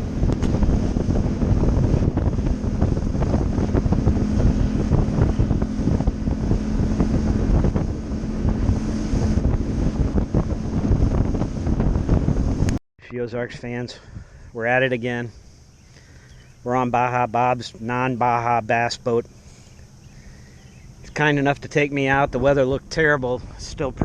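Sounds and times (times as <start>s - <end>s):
wind buffeting microphone: 0.0s - 12.8s, 13.4s - 24.0s
steady low hum: 0.0s - 24.0s.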